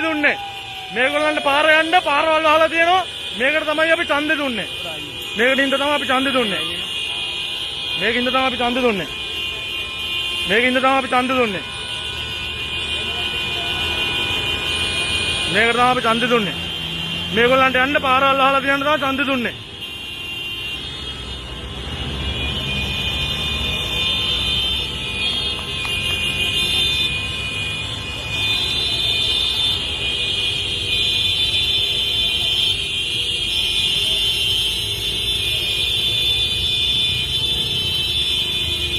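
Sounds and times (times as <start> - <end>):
car horns honking: 0.0 - 38.9
idling traffic: 0.0 - 38.9.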